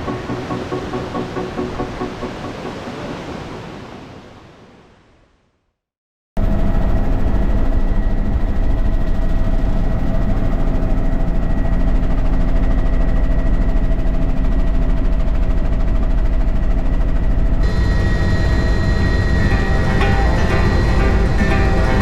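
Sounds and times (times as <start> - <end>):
loud engine drone: 0.0 - 2.6, 17.5 - 22.0.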